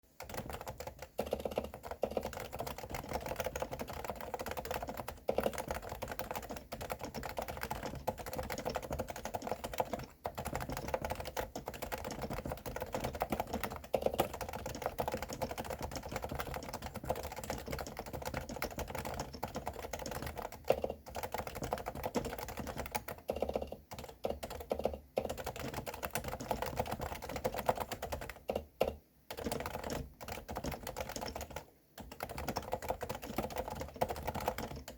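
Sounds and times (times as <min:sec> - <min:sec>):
fast typing on muted keyboard: 0:00.1 - 0:34.9.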